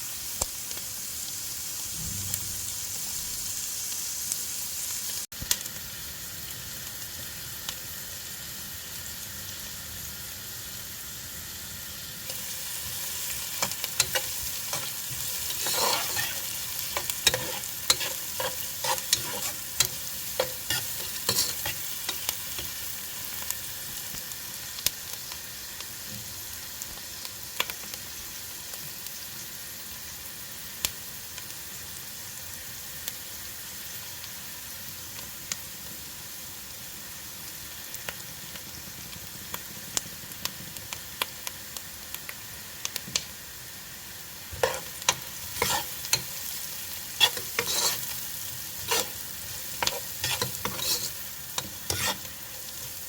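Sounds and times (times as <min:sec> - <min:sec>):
food sizzling in a pan: 0:00.0 - 0:53.0
utensil scraping a pan: 0:12.3 - 0:22.7, 0:44.5 - 0:46.5, 0:47.1 - 0:52.7.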